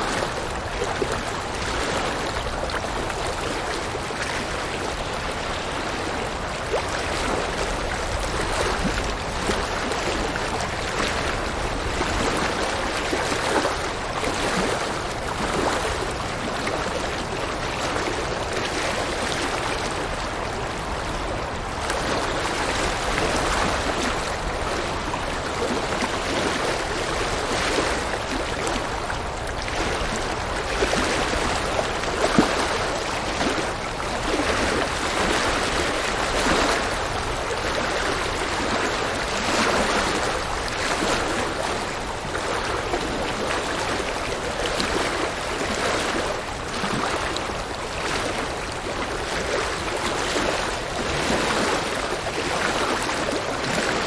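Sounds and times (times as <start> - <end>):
river flowing over rocks: 0.0 - 54.0.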